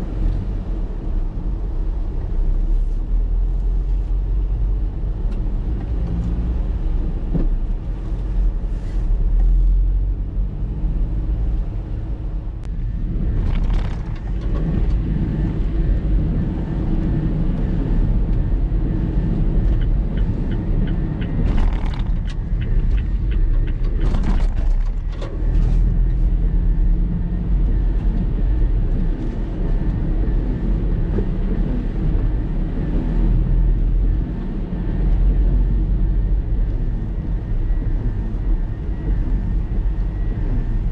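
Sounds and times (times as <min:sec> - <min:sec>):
wind buffeting microphone: 0:11.8 - 0:40.9.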